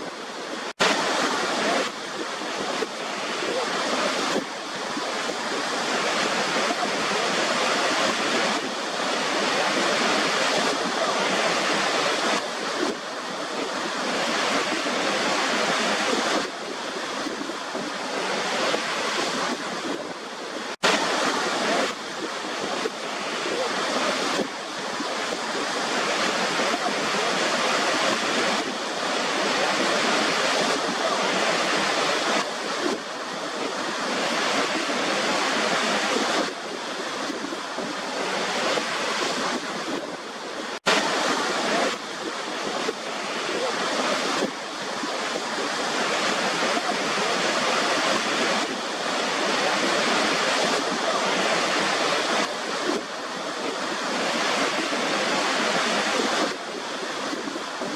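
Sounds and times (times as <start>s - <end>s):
waterfall rushing: 0.0s - 57.9s.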